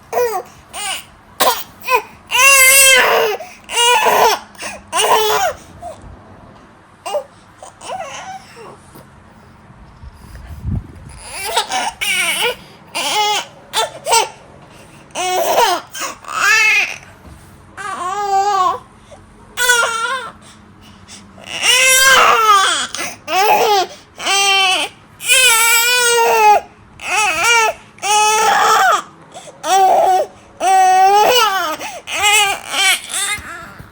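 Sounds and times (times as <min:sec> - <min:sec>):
baby crying: 0:00.1 - 0:05.7, 0:07.0 - 0:08.8, 0:11.2 - 0:14.4, 0:15.1 - 0:17.1, 0:17.8 - 0:18.9, 0:19.6 - 0:20.4, 0:21.4 - 0:33.9.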